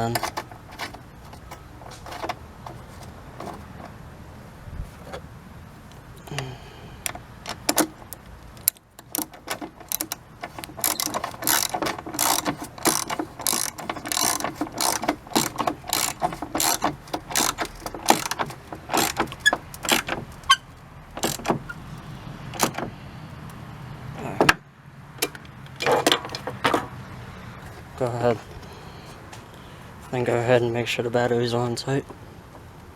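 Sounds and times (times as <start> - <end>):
ratchet wrench clicking: 7.0 - 20.6, 21.2 - 21.7.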